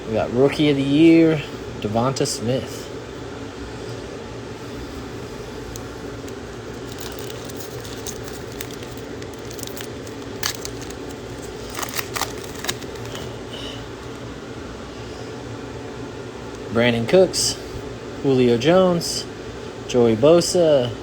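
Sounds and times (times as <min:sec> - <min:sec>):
steady low hum: 0:00.0 - 0:21.0
cards being handled: 0:05.6 - 0:13.3
foil wrapper tearing and crinkling: 0:05.8 - 0:13.3.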